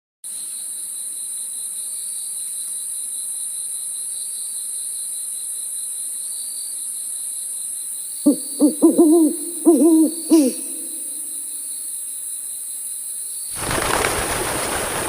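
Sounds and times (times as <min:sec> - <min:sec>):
insects chirping: 0:00.3 - 0:15.0.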